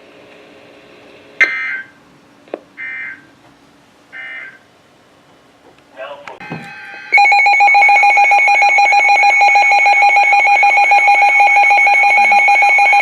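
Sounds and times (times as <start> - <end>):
faint radio hum: 5.9 - 7.0.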